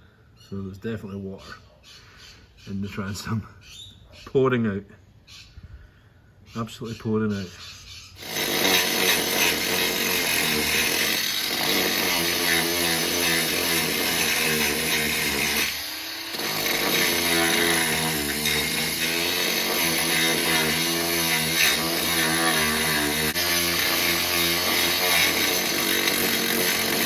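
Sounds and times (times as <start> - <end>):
power tool cutting wood: 8.2 - 27.0.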